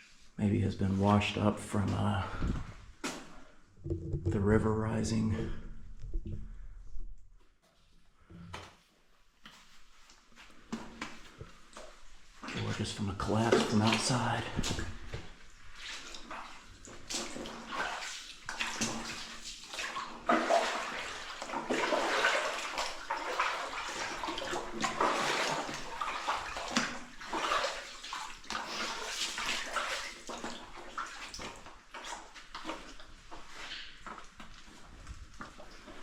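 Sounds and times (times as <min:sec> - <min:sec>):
boots wading through water: 0:09.4 - 0:36.0.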